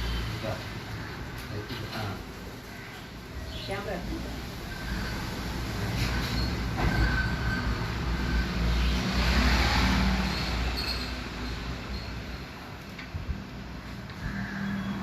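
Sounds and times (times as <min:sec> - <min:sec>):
passing vehicle rumbling: 0:03.7 - 0:15.0.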